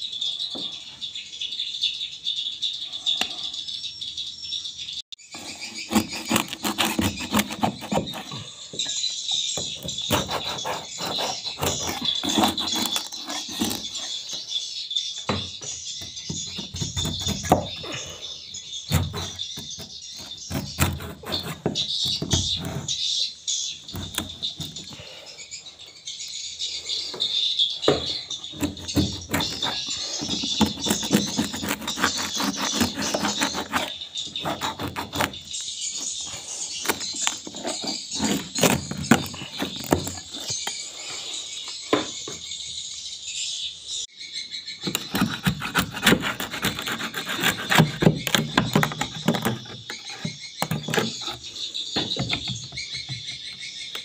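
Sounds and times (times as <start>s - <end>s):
sharp scrapes and knocks: 5.3s - 8.5s, 9.6s - 14.4s, 15.6s - 18.2s, 18.9s - 23.0s, 23.9s - 25.0s, 27.9s - 40.8s, 44.8s - 53.2s.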